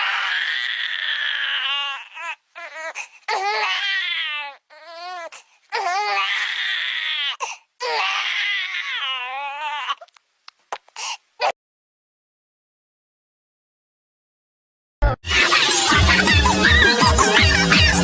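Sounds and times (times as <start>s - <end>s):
baby crying: 0.0s - 10.1s, 15.3s - 18.0s.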